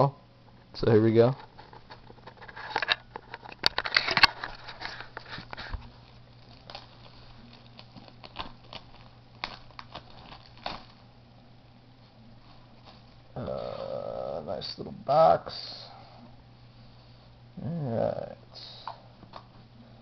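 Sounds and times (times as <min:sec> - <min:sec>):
wrapping crinkling and tearing: 0:01.4 - 0:11.2, 0:12.0 - 0:14.0.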